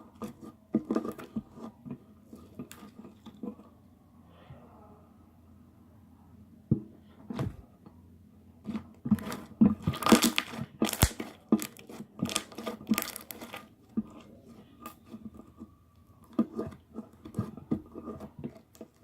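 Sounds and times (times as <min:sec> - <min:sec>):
slime squished by hand: 0:09.2 - 0:13.6.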